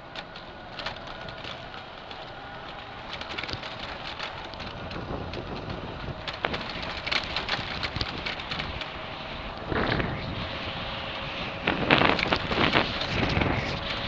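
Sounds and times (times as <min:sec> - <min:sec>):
scooter clicking and rattling: 0:00.0 - 0:09.1, 0:11.7 - 0:14.0
tyre noise on dirt: 0:00.0 - 0:10.8
wind buffeting microphone: 0:00.0 - 0:14.0.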